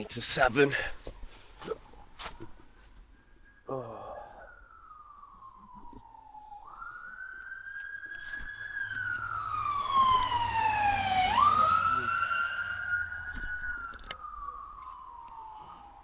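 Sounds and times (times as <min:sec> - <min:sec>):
emergency vehicle siren wailing: 0:03.6 - 0:16.0
low rumble of traffic: 0:04.8 - 0:16.0.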